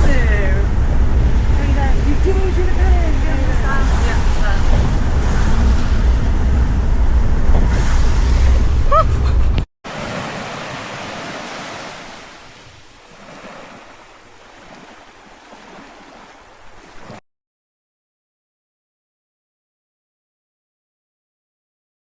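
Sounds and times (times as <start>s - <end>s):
wind rumbling on microphone: 0.0s - 17.2s
rushing water: 9.9s - 17.2s.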